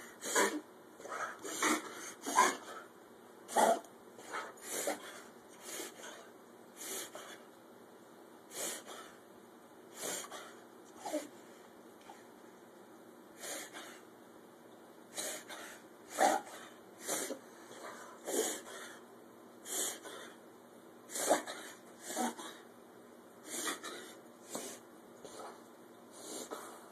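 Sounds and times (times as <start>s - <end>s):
dog short nasal snorts: 15.2s - 17.4s, 21.1s - 22.6s, 23.5s - 24.8s.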